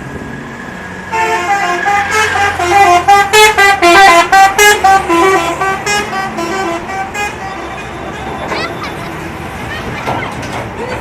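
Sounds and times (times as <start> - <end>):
bus musical air horn: 1.1 - 8.8.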